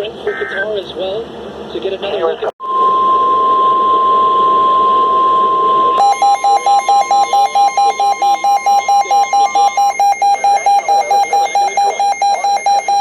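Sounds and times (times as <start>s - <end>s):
steady high tone: 2.6s - 13.0s
rapid buzzy alert beeps: 4.0s - 13.0s.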